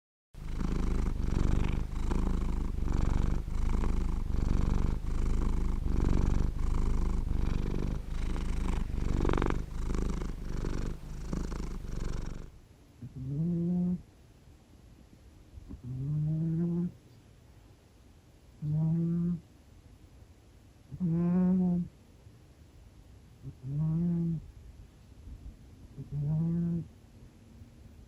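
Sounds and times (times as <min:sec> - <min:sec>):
cat snoring: 0:00.4 - 0:14.0, 0:15.7 - 0:17.0, 0:18.6 - 0:19.4, 0:20.9 - 0:21.9, 0:23.5 - 0:24.4, 0:26.0 - 0:26.9.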